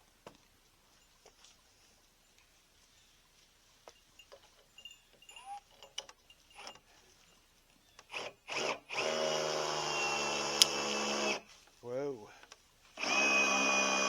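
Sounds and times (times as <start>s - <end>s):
power drill running: 8.1s - 11.4s, 13.0s - 14.0s
knocks and clicks of tools and wood: 10.6s - 10.8s.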